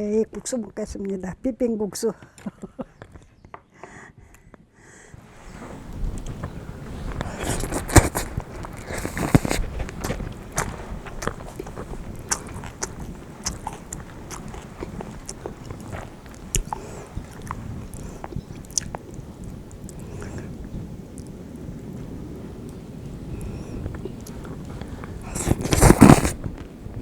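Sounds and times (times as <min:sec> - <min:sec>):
noodles being chewed: 0:05.8 - 0:21.4, 0:22.0 - 0:26.7.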